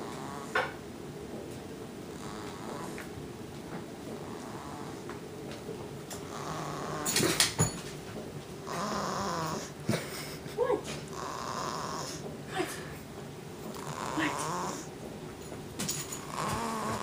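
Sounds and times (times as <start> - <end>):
pet snoring: 0.0 - 0.8, 2.1 - 3.2, 4.0 - 5.2, 6.1 - 7.6, 8.6 - 9.8, 11.1 - 12.3, 13.6 - 15.0, 16.0 - 17.0.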